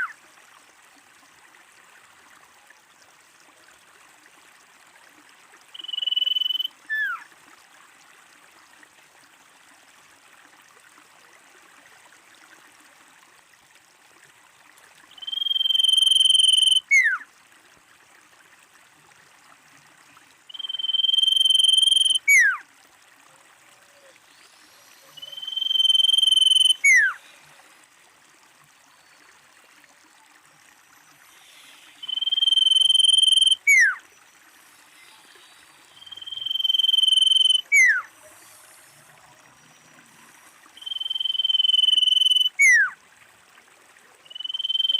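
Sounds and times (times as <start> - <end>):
faint steady hiss: 0.0 - 44.9
bird whistling song: 5.8 - 7.2, 15.1 - 17.2, 20.5 - 22.6, 25.0 - 27.2, 31.9 - 34.0, 36.0 - 38.6, 40.8 - 43.0, 44.3 - 44.9.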